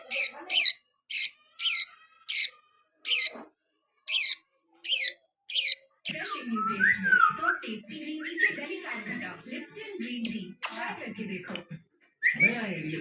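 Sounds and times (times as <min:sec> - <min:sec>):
budgerigar chirping: 0:00.0 - 0:03.4, 0:04.1 - 0:05.9.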